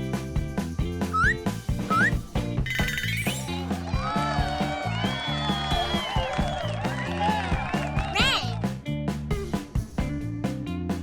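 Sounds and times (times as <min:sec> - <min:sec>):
cartoon music with steady beat: 0:00.0 - 0:04.7
rising whistle sound effects: 0:01.1 - 0:02.2.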